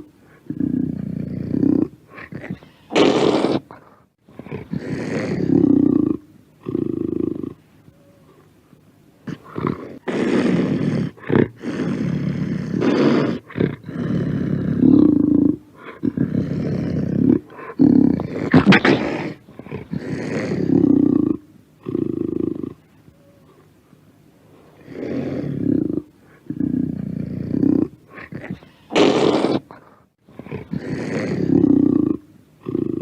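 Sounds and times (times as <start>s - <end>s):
panther roaring: 9.3s - 22.8s, 24.8s - 29.7s.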